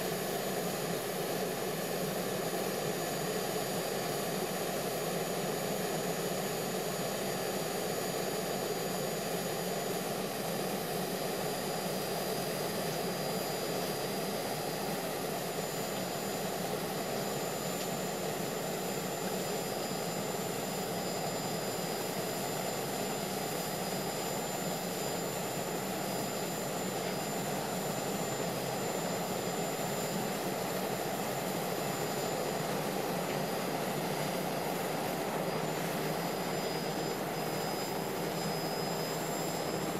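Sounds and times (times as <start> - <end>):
jet engine rush: 20.4 - 39.9.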